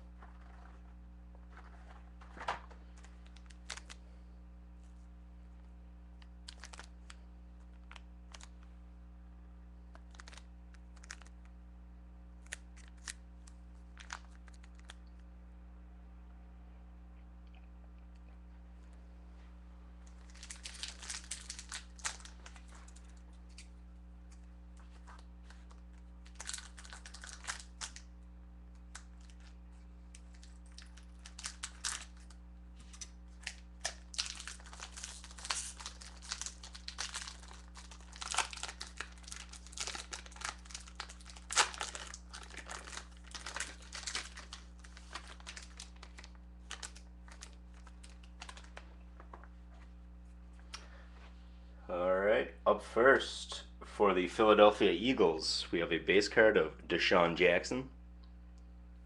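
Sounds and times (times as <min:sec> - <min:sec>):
low electrical hum: 0:00.0 - 0:59.0
wrapper crinkling and tearing: 0:01.4 - 0:04.0, 0:06.4 - 0:08.6, 0:09.9 - 0:11.5, 0:12.4 - 0:15.1, 0:20.0 - 0:28.1, 0:28.8 - 0:48.9.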